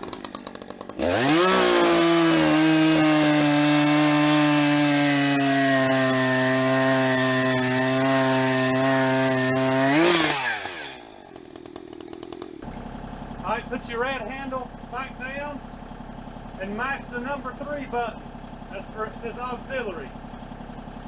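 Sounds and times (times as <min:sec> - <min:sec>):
chainsaw cutting through log: 0:00.0 - 0:12.8.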